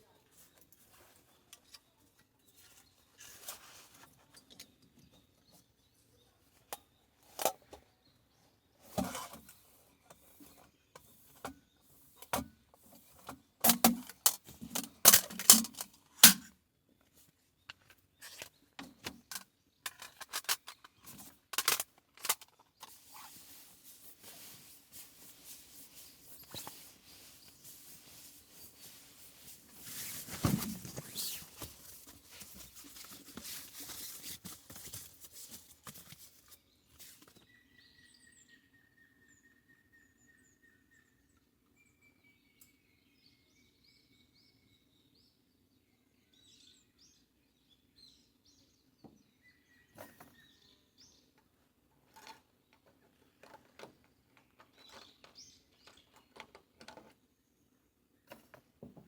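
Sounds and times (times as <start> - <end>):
songbirds calling: 0.0 - 16.2, 17.0 - 58.9
crackling rustling noise: 2.5 - 4.5, 19.3 - 37.4.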